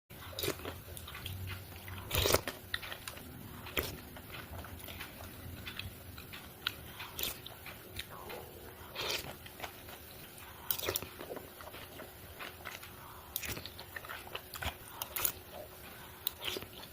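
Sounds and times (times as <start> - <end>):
chewing and biting food: 0.2 - 16.9.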